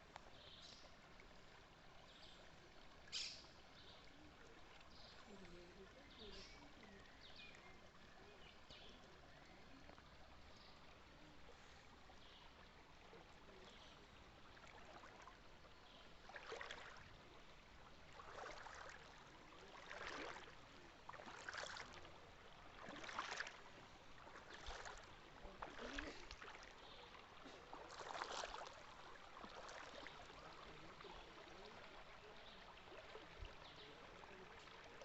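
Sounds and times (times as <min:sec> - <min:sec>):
flowing water rushing: 0:00.0 - 0:35.0
water splashes surging: 0:12.5 - 0:35.0.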